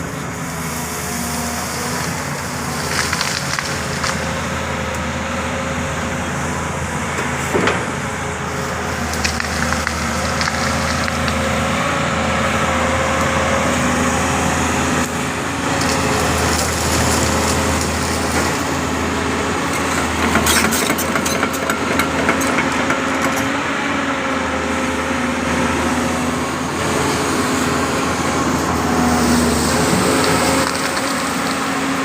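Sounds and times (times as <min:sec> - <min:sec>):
excavator diesel engine running: 0:00.0 - 0:32.0
sharp cracking and snapping: 0:02.7 - 0:04.3, 0:09.1 - 0:11.5.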